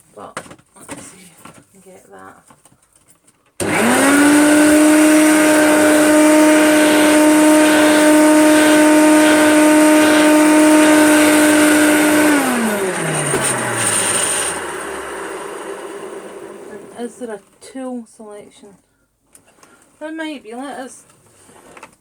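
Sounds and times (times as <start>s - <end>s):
vacuum cleaner motor whine: 3.6s - 17.0s
vacuum cleaner winding down: 3.6s - 17.1s.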